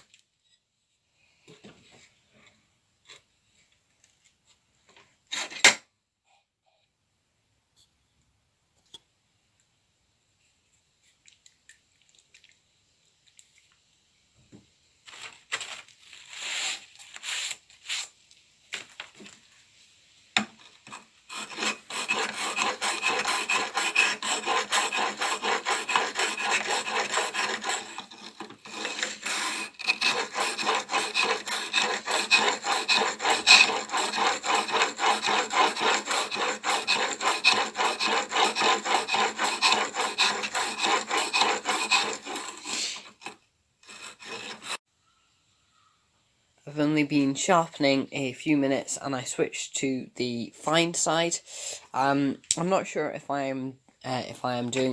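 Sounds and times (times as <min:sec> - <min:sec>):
chisel scraping on oilstone: 0:20.8 - 0:44.8.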